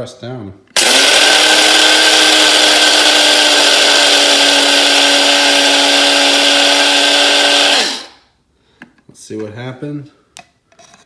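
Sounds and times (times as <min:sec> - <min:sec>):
electric coffee grinder running: 0:00.8 - 0:08.2.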